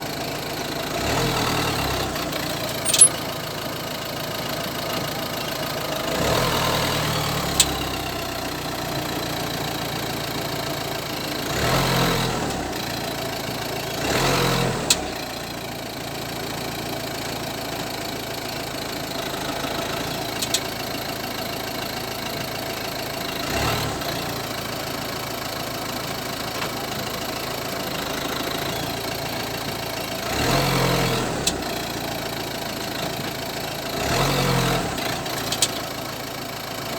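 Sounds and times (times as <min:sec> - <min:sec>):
car engine running: 0:00.0 - 0:15.3.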